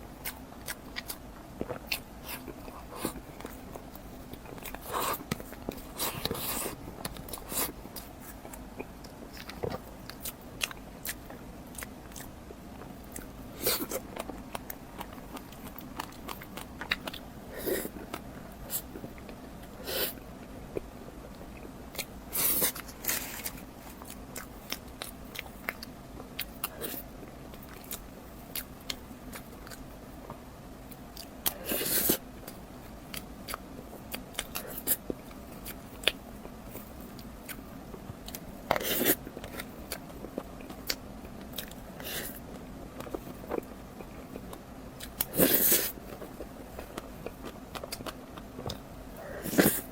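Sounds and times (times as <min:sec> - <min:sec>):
biting and chewing: 0:00.2 - 0:19.8, 0:31.0 - 0:49.9.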